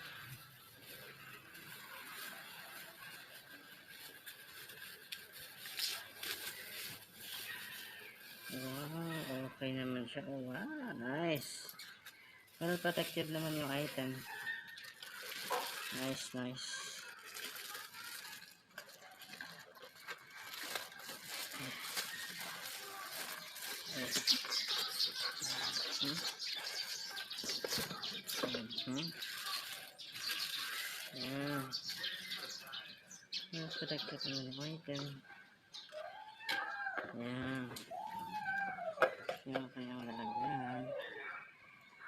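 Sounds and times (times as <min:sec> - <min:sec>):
packaging rustling and crinkling: 0:00.0 - 0:09.6, 0:11.4 - 0:33.4.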